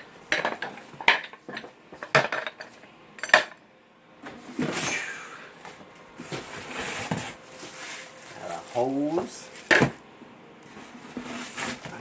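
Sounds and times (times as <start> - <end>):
packaging rustling: 6.2 - 10.0.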